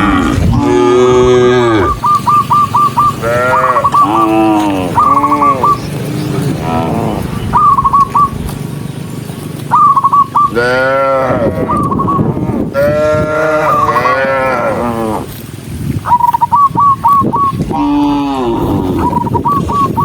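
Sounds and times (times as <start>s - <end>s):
cattle mooing: 0.0s - 2.2s, 3.0s - 7.4s, 10.5s - 15.4s, 17.7s - 19.4s
high repeated chirps: 1.8s - 6.0s, 7.5s - 8.4s, 9.7s - 10.6s, 18.9s - 20.0s.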